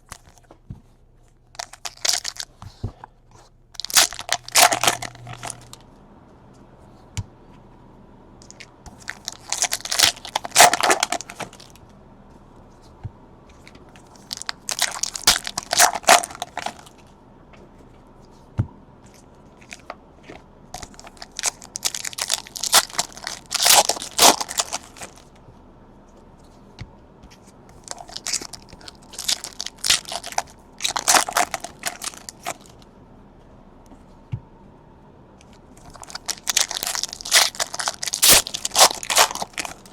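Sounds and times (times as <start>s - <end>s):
card wrappers tearing and crinkling: 1.6s - 2.5s, 3.8s - 5.8s, 8.4s - 11.8s, 14.0s - 17.0s, 20.8s - 25.3s, 27.7s - 32.8s, 35.8s - 39.9s.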